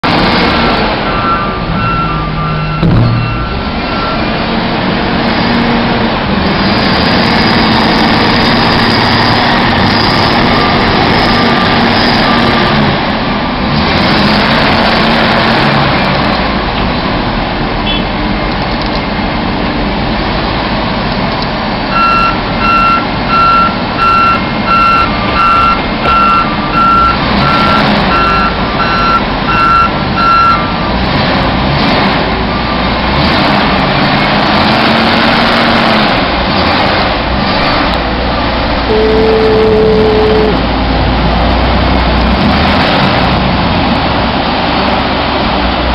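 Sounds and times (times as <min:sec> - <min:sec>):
vehicle engine running under load: 0:00.0 - 0:45.9
reversing alarm beeping: 0:01.1 - 0:04.4, 0:21.9 - 0:30.7, 0:38.9 - 0:40.6.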